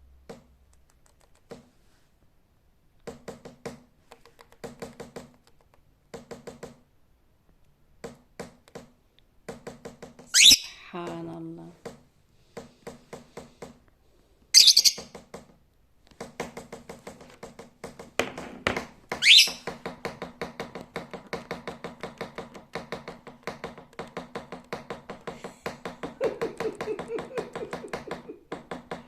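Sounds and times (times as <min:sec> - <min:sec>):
lovebird shrill chirps: 0:10.4 - 0:10.8, 0:14.6 - 0:15.1, 0:19.2 - 0:19.6.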